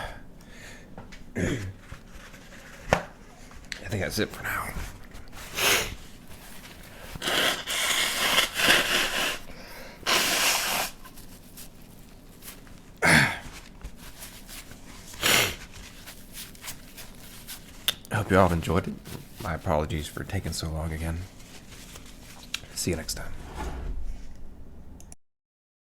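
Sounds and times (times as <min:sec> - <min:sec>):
man breathing hard: 0:00.0 - 0:01.0, 0:06.9 - 0:10.6
noisy nose sounds: 0:05.3 - 0:06.1, 0:06.8 - 0:11.6, 0:13.0 - 0:16.1.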